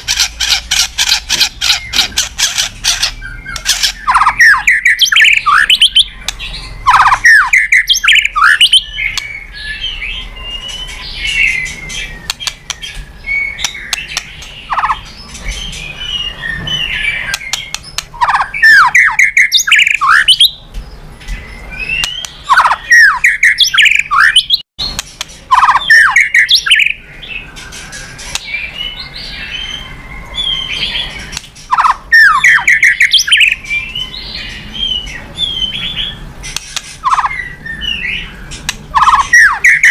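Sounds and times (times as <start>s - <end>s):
quiet bird twittering: 0.0s - 39.9s
bird singing whistles: 3.1s - 20.7s, 21.4s - 24.6s, 25.5s - 36.2s, 37.0s - 39.9s.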